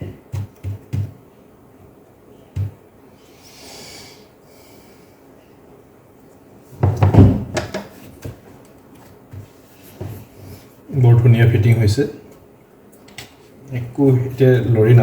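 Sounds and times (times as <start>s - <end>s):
plastic knocks and clatter: 6.8s - 8.4s.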